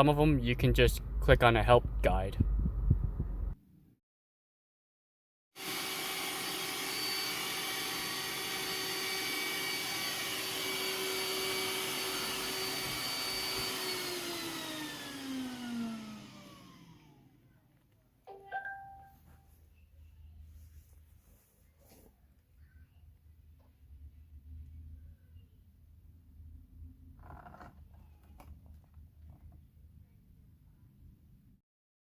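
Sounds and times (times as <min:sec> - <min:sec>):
robot vacuum motor whirring: 0:05.6 - 0:17.4.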